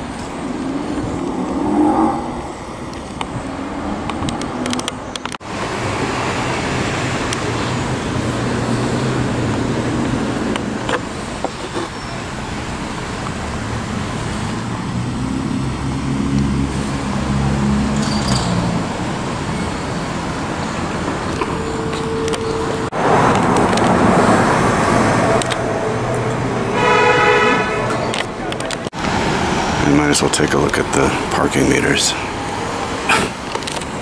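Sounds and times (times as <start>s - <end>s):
vehicle passing: 0.0s - 11.4s, 12.8s - 33.4s
low engine hum: 0.0s - 26.7s
car engines and tyre noise: 0.0s - 34.0s.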